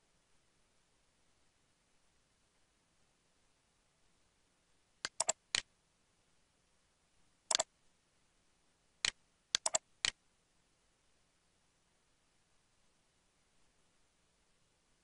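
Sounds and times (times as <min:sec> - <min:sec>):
computer mouse clicking: 0:05.0 - 0:05.7, 0:07.5 - 0:07.7, 0:09.0 - 0:10.2.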